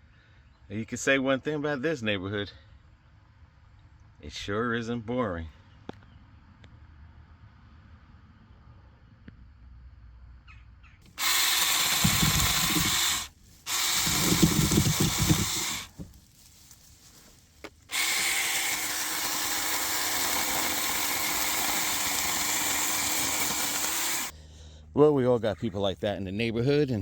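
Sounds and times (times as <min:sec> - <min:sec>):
handheld power tool running: 0:11.1 - 0:16.3, 0:17.9 - 0:24.3.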